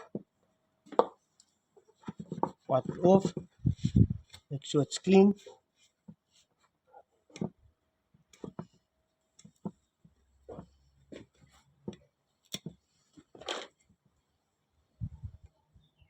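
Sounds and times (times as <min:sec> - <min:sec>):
soft rustling: 0:01.8 - 0:04.5.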